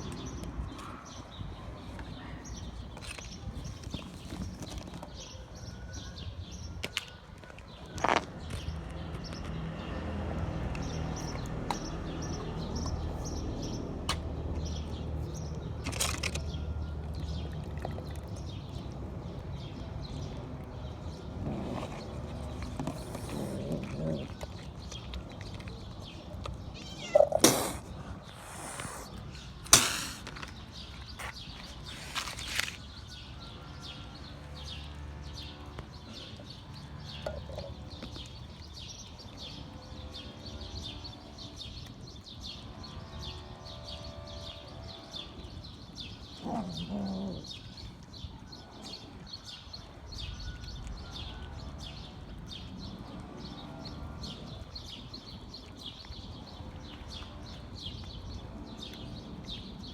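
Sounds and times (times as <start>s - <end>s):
cat meowing: 26.7s - 27.8s.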